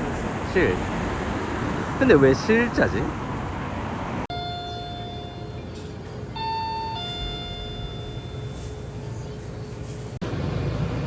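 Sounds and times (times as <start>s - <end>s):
electronic door chime: 4.3s - 8.9s.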